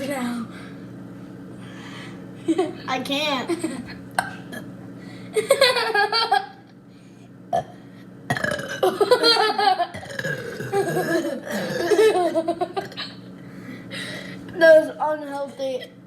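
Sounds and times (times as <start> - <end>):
laughter: 5.4 - 6.6, 8.9 - 9.9
loud burping: 8.3 - 9.0, 9.9 - 12.1.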